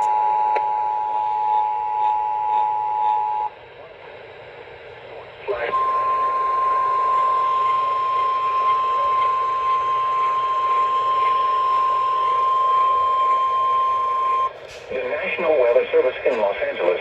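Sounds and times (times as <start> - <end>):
radio hiss: 5.1 - 17.0.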